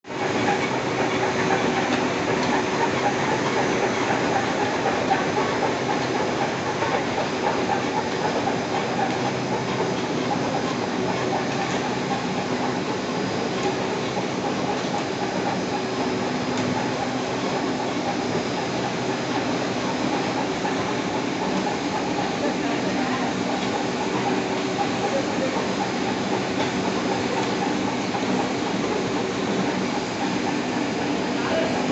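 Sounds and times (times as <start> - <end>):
brick making machine running: 0.1 - 31.9.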